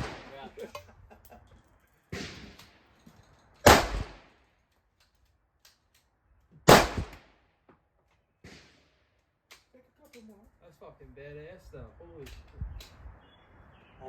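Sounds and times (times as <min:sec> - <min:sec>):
handgun shots: 0:03.6 - 0:04.2, 0:06.7 - 0:07.2.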